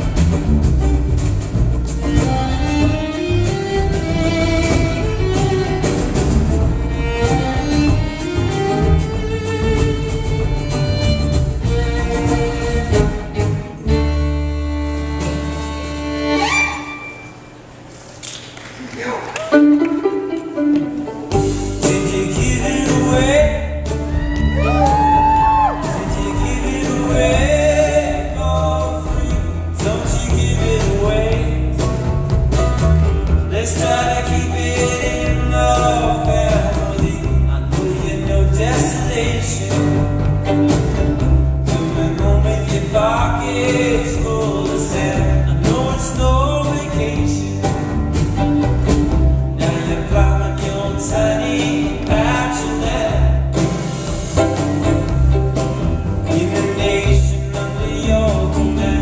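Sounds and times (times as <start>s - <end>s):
acoustic instruments: 0.0s - 59.0s
man singing: 21.7s - 32.1s, 33.5s - 40.2s, 40.8s - 47.8s, 49.5s - 53.7s, 56.2s - 59.0s.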